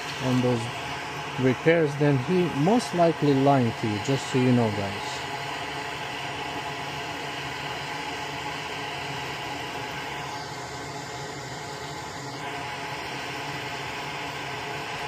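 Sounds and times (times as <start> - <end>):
fan machine whirring: 0.0 - 15.0.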